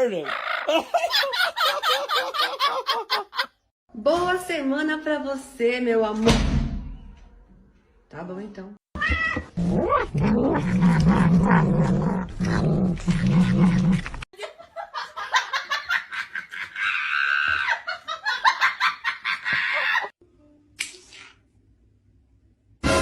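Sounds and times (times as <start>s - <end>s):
dog growling: 9.6s - 14.2s.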